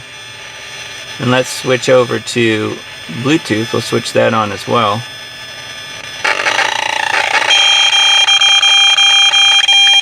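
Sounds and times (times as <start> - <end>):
meter alarm electronic tone: 0.0 - 10.0.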